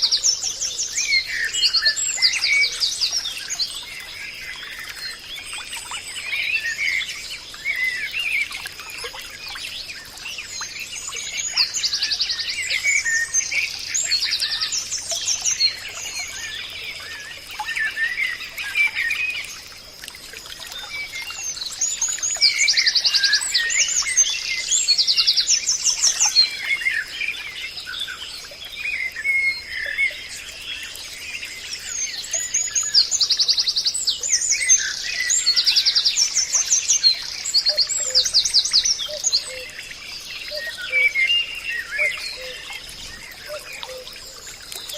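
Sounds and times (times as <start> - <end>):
birds chirping and whistling: 33.9 - 44.9.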